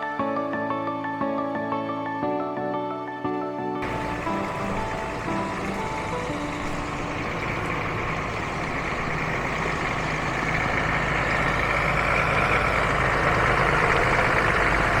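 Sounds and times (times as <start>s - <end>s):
truck engine running: 3.8s - 15.0s.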